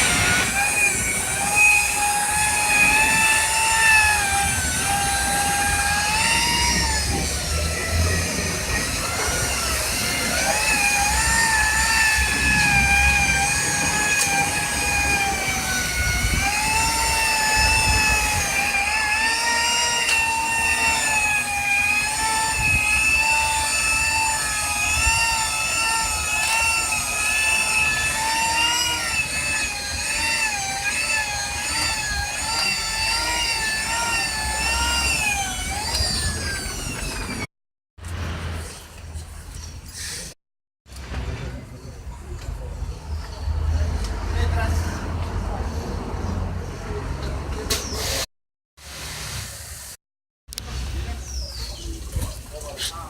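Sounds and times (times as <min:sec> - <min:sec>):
electric polisher whining: 0:00.0 - 0:37.5.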